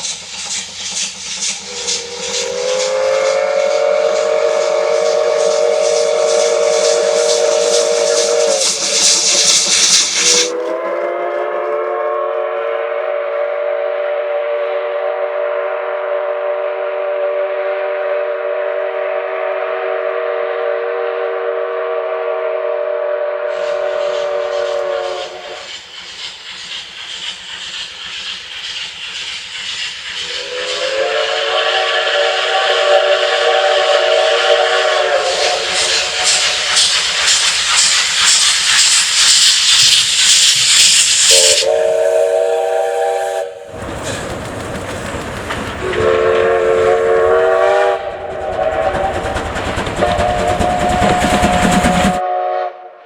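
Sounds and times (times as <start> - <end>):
locomotive exhaust chuffing: 0.0 - 13.4, 23.6 - 52.3
steam hissing: 0.0 - 16.5, 23.4 - 52.8
steam locomotive whistle: 0.0 - 53.0.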